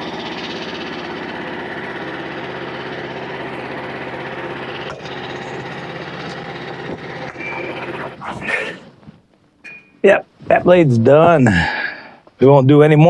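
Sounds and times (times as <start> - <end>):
band saw cutting log: 0.0 - 9.0
sawmill engine running: 0.0 - 9.0.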